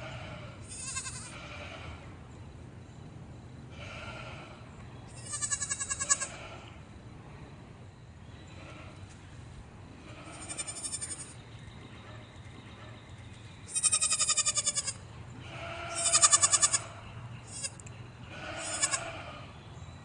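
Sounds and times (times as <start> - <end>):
goats bleating: 0.1 - 1.8, 5.2 - 6.6, 13.7 - 16.9, 17.5 - 19.5.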